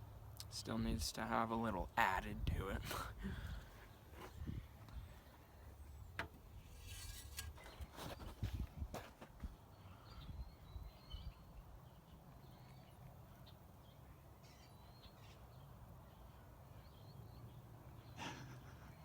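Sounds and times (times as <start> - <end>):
faint bird chirps: 9.7 - 19.0.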